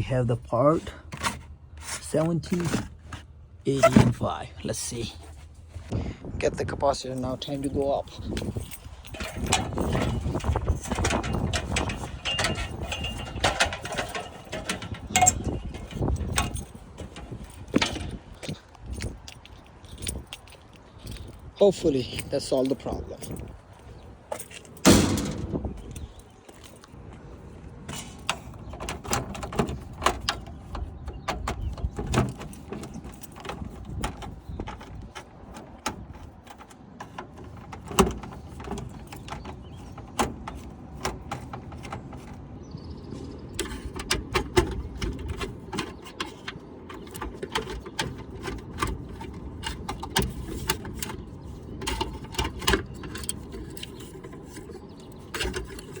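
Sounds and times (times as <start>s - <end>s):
clicks and clanks of hand work: 7.4s - 21.3s, 27.9s - 42.4s, 43.4s - 56.0s
steady low rumble: 21.0s - 26.2s.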